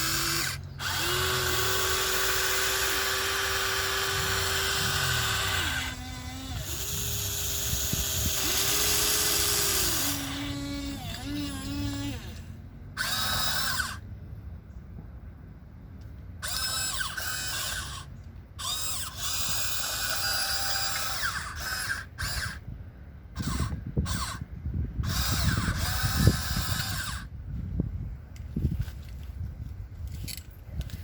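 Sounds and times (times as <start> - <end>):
small electric motors whining: 0.0 - 14.0, 16.4 - 22.6, 23.3 - 27.3.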